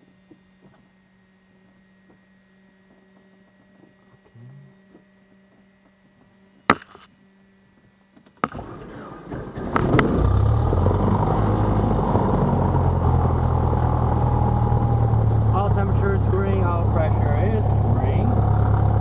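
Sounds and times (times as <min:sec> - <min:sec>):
propeller engine running: 0:08.4 - 0:19.0
starter cranking propeller engine: 0:08.4 - 0:19.0.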